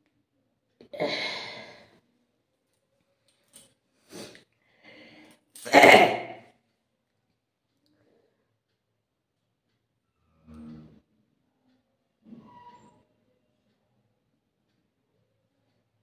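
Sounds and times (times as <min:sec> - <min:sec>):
person sneezing: 0:01.0 - 0:01.8, 0:05.6 - 0:06.4
short sniffs and breaths: 0:04.0 - 0:04.4.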